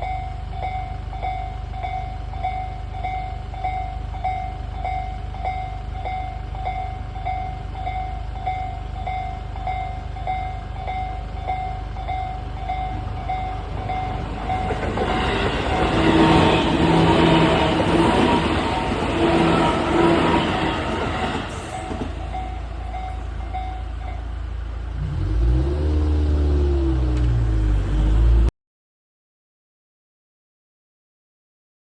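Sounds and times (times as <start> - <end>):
level-crossing warning bell: 0.0 - 25.0
train passing: 0.0 - 28.5.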